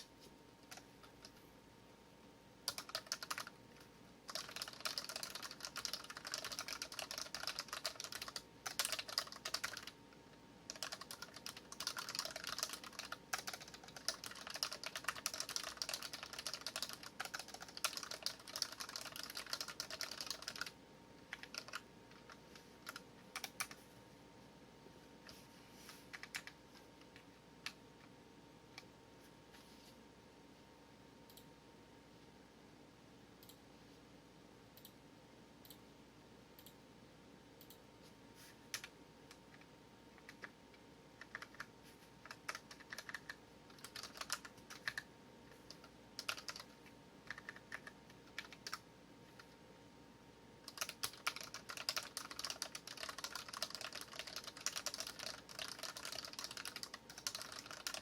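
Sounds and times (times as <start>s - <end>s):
mechanical keyboard typing: 0.0s - 1.4s, 2.6s - 3.6s, 4.3s - 10.0s, 10.7s - 23.8s, 26.1s - 26.6s, 38.7s - 40.6s, 41.2s - 48.8s, 50.6s - 58.0s.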